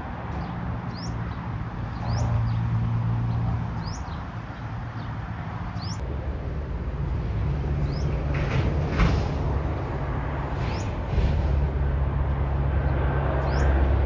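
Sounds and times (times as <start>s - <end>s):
bird chirping: 0.4s - 2.6s, 3.8s - 5.1s, 5.8s - 6.0s, 7.8s - 8.1s, 13.4s - 13.8s.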